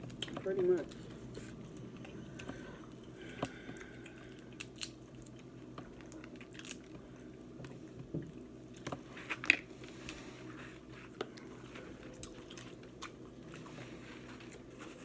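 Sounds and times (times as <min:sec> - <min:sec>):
chewing and squishing: 0:00.0 - 0:09.6, 0:11.0 - 0:15.0
steady low hum: 0:00.0 - 0:15.0
crab shell cracking: 0:04.0 - 0:05.4, 0:06.0 - 0:06.9.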